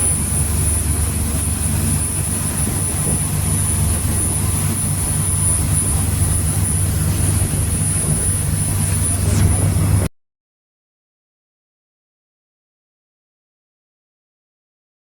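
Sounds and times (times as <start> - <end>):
boat engine droning: 0.0 - 10.1
water noise: 0.0 - 10.1
wind: 0.0 - 10.1.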